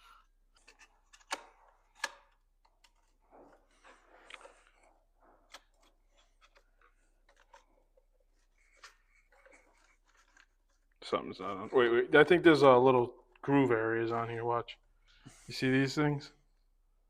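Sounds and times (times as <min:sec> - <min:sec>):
parts clicking and scraping: 0:00.0 - 0:11.0.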